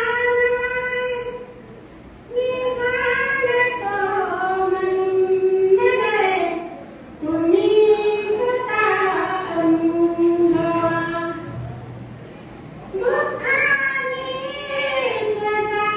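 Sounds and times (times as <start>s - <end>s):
woman singing: 2.3s - 6.6s, 7.2s - 11.6s, 13.0s - 15.9s.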